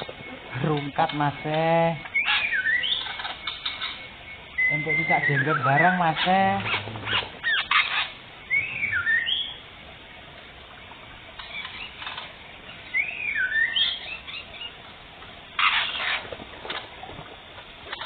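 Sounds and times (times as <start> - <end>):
songbird whistling song: 0.0 - 9.6, 11.3 - 14.8
rustling wing flutter: 14.6 - 18.0.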